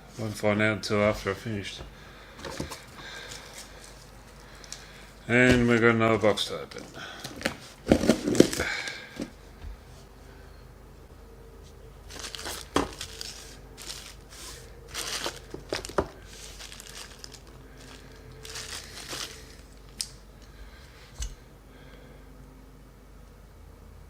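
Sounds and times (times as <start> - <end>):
cardboard and plastic rustling: 2.4 - 9.4, 12.0 - 20.0.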